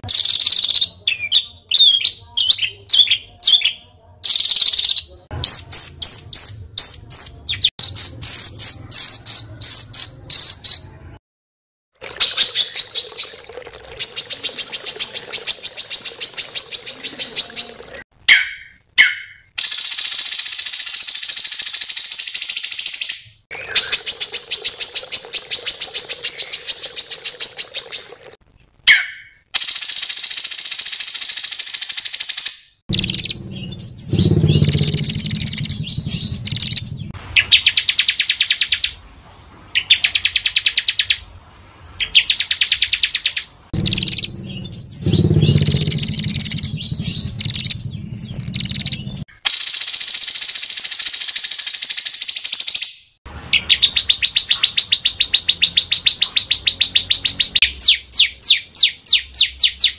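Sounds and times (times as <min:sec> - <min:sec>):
songbirds buzzing trills: 0:32.9 - 0:37.1, 0:43.8 - 0:49.2.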